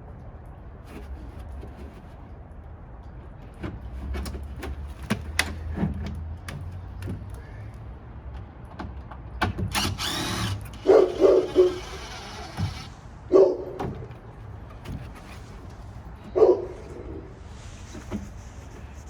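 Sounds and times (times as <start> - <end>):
objects knocking and clunking: 3.2 - 7.5, 13.7 - 16.4
dog barking: 10.8 - 11.9, 13.3 - 13.8, 16.3 - 17.2.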